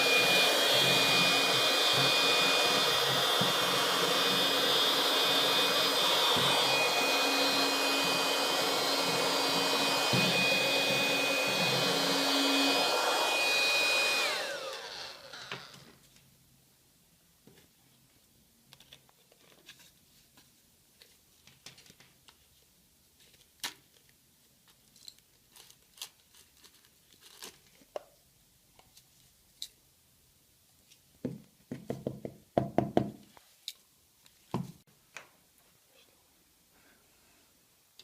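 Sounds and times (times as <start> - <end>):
rustling: 17.5 - 28.2.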